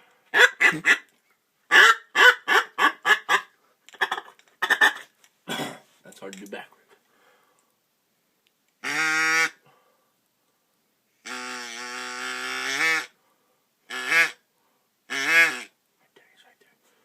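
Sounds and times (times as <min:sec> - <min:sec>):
imitation duck quacks: 0:01.7 - 0:05.1, 0:13.9 - 0:14.4, 0:15.1 - 0:15.7.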